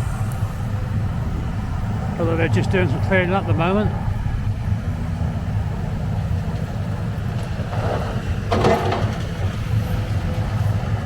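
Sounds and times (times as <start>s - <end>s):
machine engine rumbling: 0.0s - 11.0s
brief clatter: 7.3s - 9.7s.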